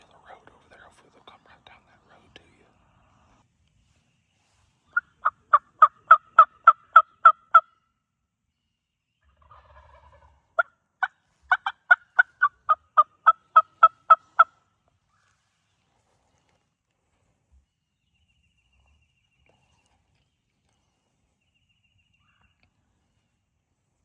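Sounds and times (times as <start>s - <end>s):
turkey yelps: 4.9s - 7.8s, 9.4s - 14.5s.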